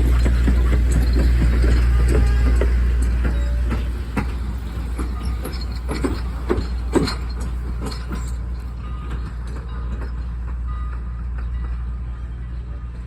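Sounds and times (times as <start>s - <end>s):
sharp knocks and clanks: 0.0s - 10.2s
train rumbling along track: 0.0s - 13.0s.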